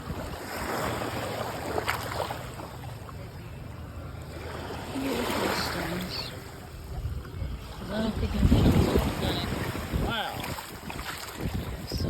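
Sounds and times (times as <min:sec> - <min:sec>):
wind on microphone: 0:00.0 - 0:01.1, 0:06.8 - 0:12.0
waves washing on shore: 0:00.0 - 0:12.0.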